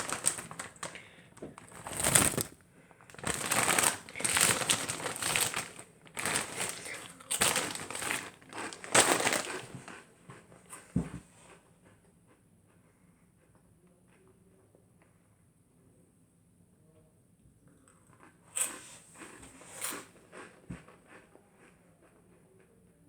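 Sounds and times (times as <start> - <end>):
plastic crisp packet crinkling: 0.0 - 10.0.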